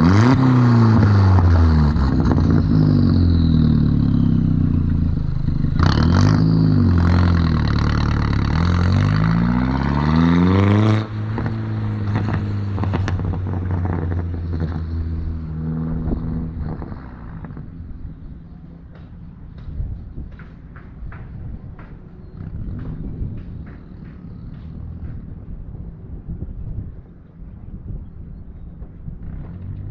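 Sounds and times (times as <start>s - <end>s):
car engine revving: 0.0s - 18.2s.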